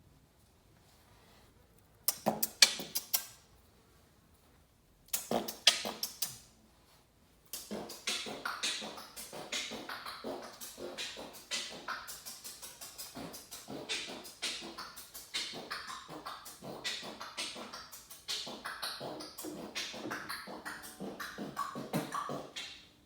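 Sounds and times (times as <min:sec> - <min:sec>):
vocal percussion beat: 0:05.1 - 0:06.4, 0:07.5 - 0:22.9.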